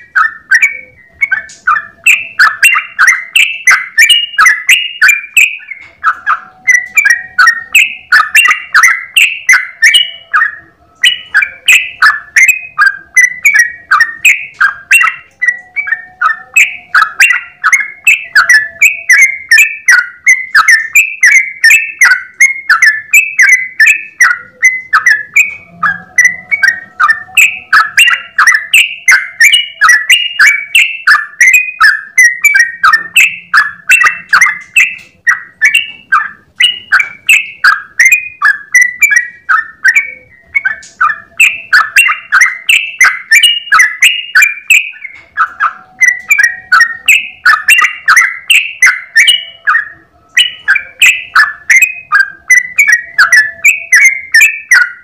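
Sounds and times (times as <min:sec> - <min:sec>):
bird bubbling song: 0:00.0 - 0:55.0.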